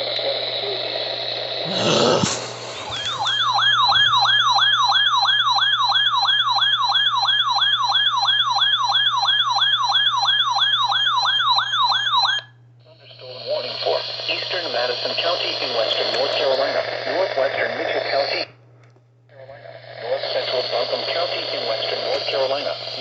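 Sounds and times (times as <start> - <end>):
steady low hum: 0.0 - 7.3, 12.5 - 23.0
electronic siren alert tone: 2.9 - 12.5.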